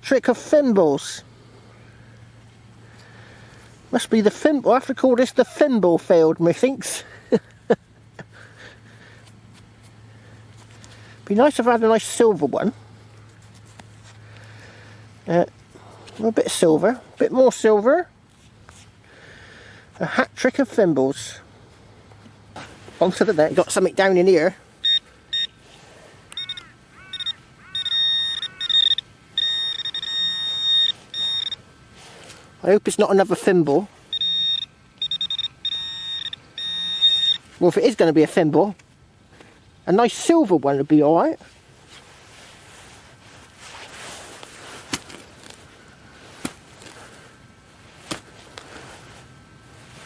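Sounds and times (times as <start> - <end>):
metal detector tones: 24.8 - 25.6, 26.3 - 31.7, 33.4 - 38.0.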